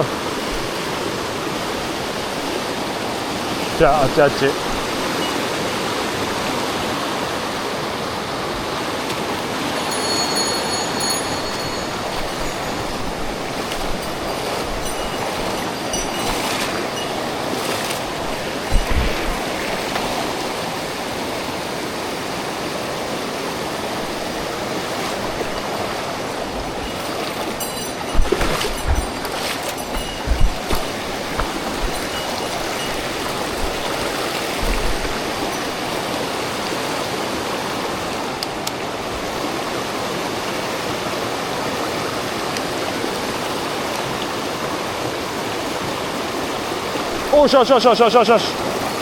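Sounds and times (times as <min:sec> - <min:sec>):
stream water rushing: 0:00.0 - 0:49.0
dull knocks: 0:18.7 - 0:19.4, 0:27.9 - 0:33.0.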